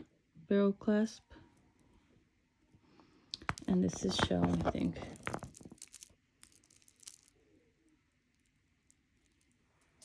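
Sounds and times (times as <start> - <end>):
bead necklaces clicking: 3.4 - 7.3.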